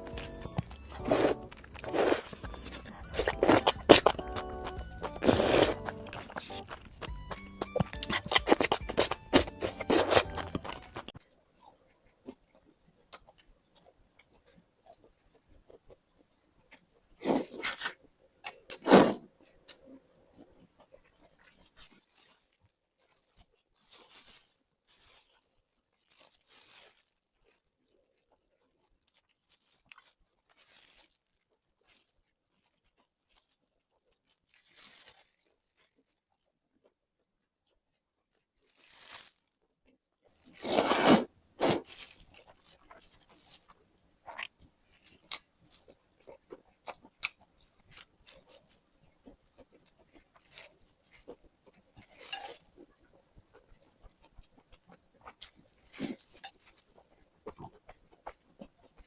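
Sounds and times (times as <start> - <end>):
small chewing clicks: 0.0 - 16.9, 41.9 - 59.0
crunchy food chewing: 0.0 - 37.0, 37.6 - 39.6, 40.2 - 59.0.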